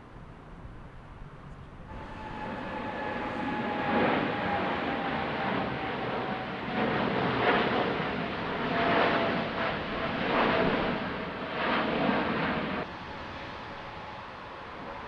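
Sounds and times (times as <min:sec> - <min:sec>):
jet airliner engines roaring: 0:01.8 - 0:15.0.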